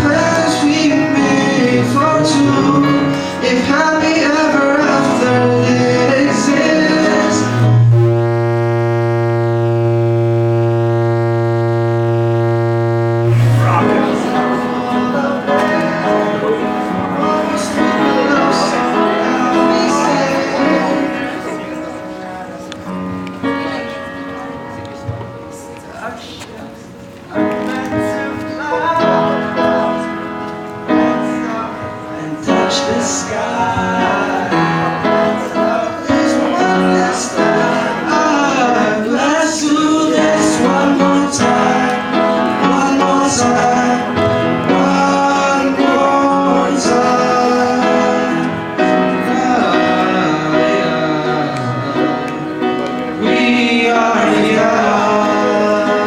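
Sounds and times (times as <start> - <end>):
men singing pop songs: 0.0 - 7.8, 32.2 - 56.0
musical accompaniment: 0.0 - 25.8.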